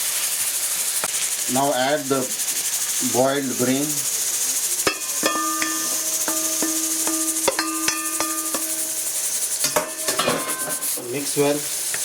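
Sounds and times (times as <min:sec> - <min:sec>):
frying sizzle: 0:00.0 - 0:12.0
metal spoon clinking on pot: 0:04.8 - 0:10.8.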